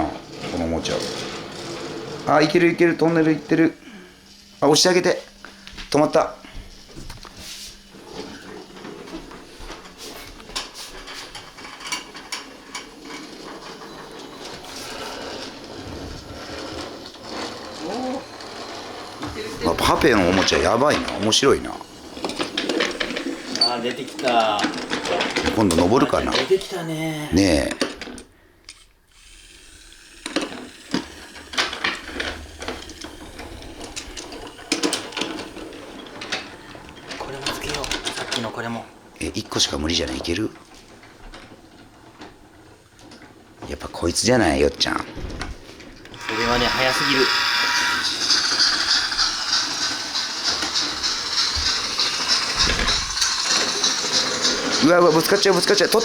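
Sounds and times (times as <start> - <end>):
toy train motor whirring: 0.0 - 45.1, 45.9 - 56.0
toy train pieces clicking: 10.6 - 26.8, 27.4 - 38.8, 46.2 - 56.0.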